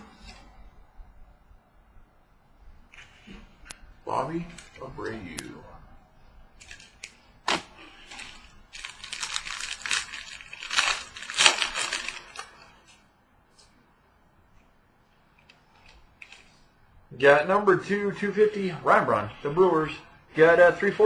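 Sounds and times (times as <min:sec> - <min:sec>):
wrapper tearing and crinkling: 0:06.6 - 0:13.0.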